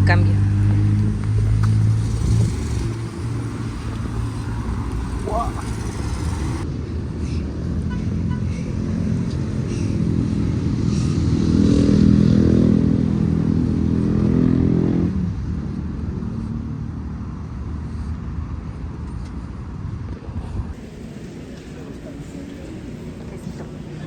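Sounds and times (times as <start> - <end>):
road rumble: 0.0 - 24.0
vehicle engine: 0.0 - 24.0.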